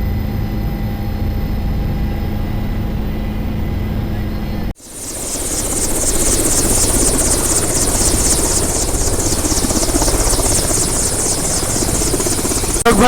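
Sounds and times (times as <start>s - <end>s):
helicopter rotor beating: 0.6s - 13.0s.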